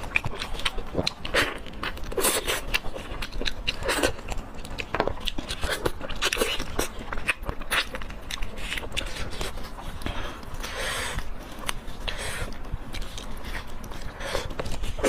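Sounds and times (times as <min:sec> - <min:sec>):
close chewing and biting: 0:00.0 - 0:15.0.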